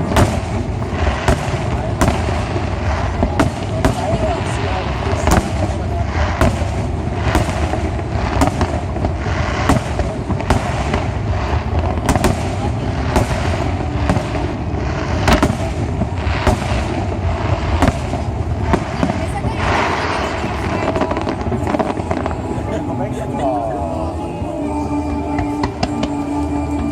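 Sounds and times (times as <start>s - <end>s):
rumble and crackle of fireworks: 0.0s - 26.9s.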